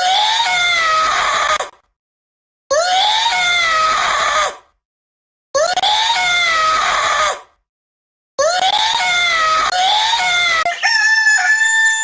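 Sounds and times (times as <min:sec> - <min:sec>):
goat screaming bleat: 0:10.7 - 0:12.0.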